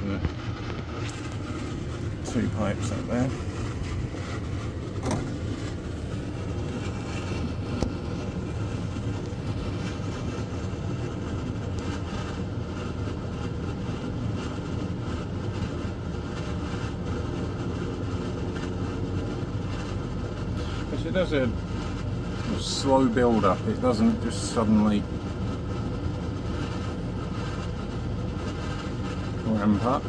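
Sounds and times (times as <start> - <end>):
air conditioner fan blowing air: 0.0 - 30.0
low hum of unit: 0.0 - 30.0.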